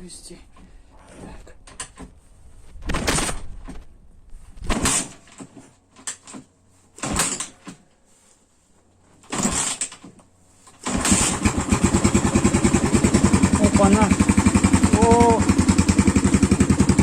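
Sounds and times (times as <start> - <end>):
engine kick-start: 7.0 - 7.6, 9.2 - 10.1, 10.7 - 17.0
motorcycle engine running: 10.8 - 17.0.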